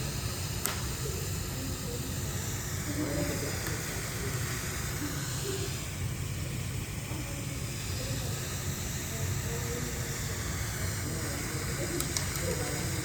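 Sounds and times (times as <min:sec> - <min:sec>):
hot gas hissing from welder: 0:00.0 - 0:13.0.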